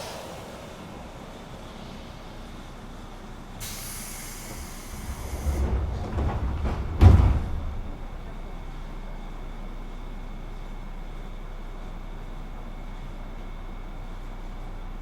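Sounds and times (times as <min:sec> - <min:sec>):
train doors sliding rumble: 0:00.0 - 0:10.0
compressed air hissing: 0:03.6 - 0:05.5
doors banging shut: 0:04.9 - 0:08.4.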